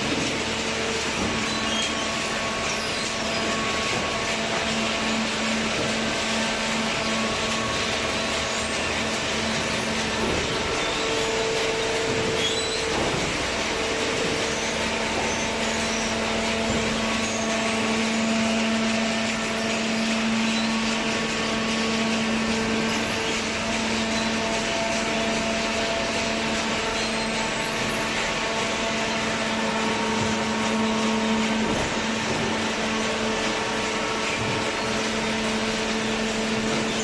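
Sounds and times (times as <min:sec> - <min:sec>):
baler motor and pump humming: 0:00.0 - 0:37.0.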